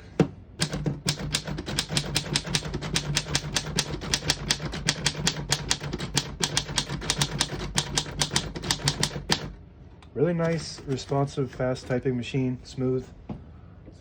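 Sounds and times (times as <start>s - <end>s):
typewriter typing fast: 0.6s - 9.6s, 10.4s - 12.0s.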